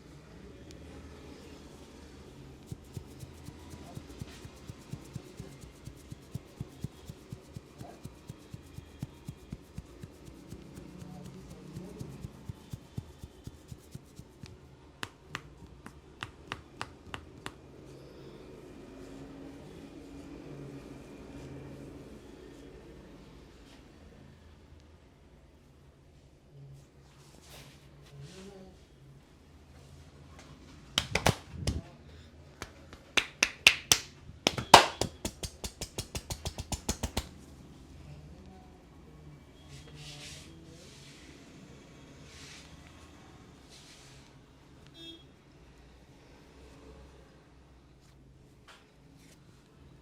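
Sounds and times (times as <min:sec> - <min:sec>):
soft quick pats on skin: 0:02.6 - 0:17.6, 0:31.0 - 0:31.9, 0:32.6 - 0:37.3
hands slapping and clapping: 0:02.7 - 0:17.6, 0:31.0 - 0:31.8, 0:32.6 - 0:37.3
hands snapping on skin: 0:31.0 - 0:31.8, 0:32.6 - 0:37.3.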